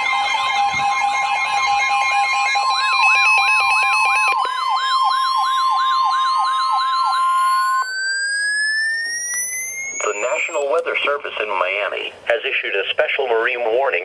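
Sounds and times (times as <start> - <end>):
slowly rising tone: 0.0 - 10.7
alternating two-pitch tone: 0.0 - 10.8
electronic siren yelp: 0.0 - 10.8
steady alert tone: 0.0 - 11.2.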